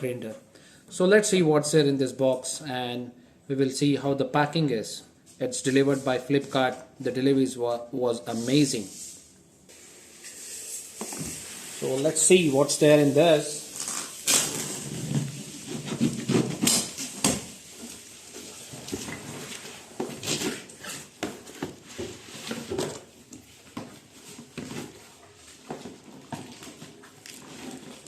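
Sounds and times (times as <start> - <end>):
cardboard rustling and scraping: 10.1 - 28.0.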